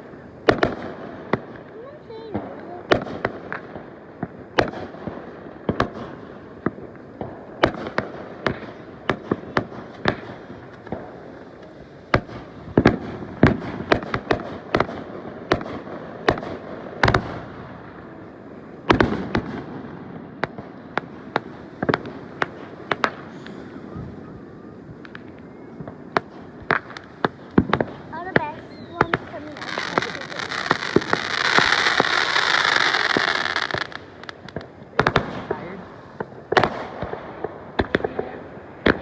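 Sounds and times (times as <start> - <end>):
fireworks bangs: 0.0 - 39.0
fireworks crackle and rumble: 0.0 - 39.0.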